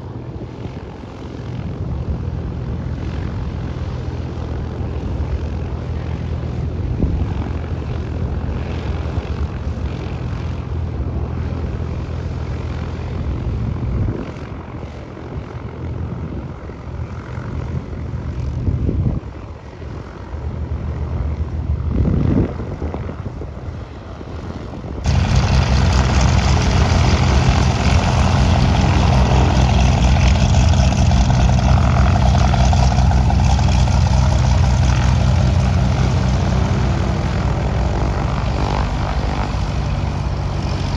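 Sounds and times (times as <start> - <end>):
propeller aircraft engine drone: 0.0 - 40.9.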